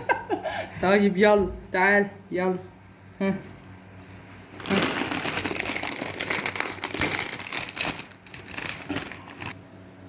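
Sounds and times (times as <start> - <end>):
plastic snack bag crinkling: 4.5 - 9.6.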